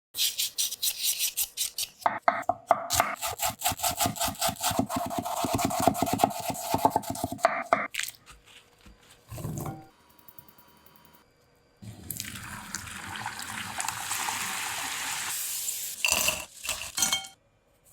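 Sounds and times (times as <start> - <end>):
blade scraping potato: 0.2 - 2.0, 2.9 - 7.7.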